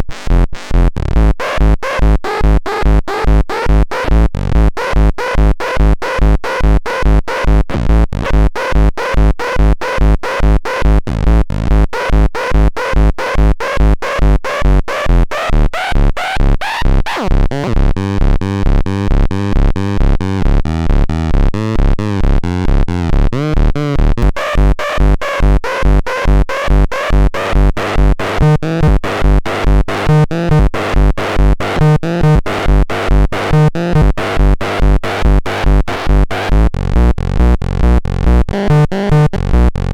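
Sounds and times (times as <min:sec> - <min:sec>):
synth chords: 0:19.3 - 0:39.8
techno kick drum: 0:22.4 - 0:39.9.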